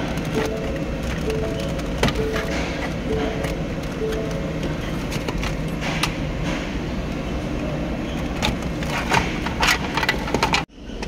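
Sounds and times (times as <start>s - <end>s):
steady noise: 0.0s - 7.0s.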